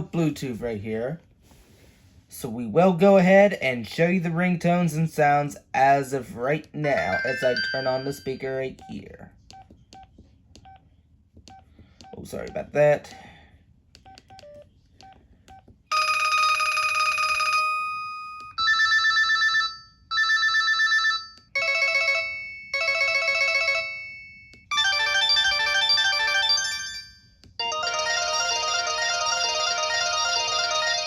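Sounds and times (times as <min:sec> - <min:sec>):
synthesized ringtone music: 0:06.8 - 0:08.5, 0:21.3 - 0:31.0.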